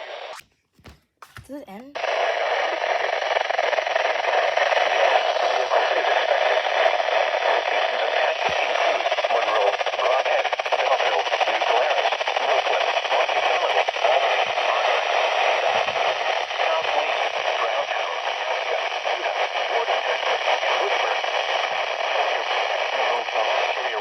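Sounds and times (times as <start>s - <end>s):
radio static hiss: 0.0s - 0.4s, 2.0s - 24.0s.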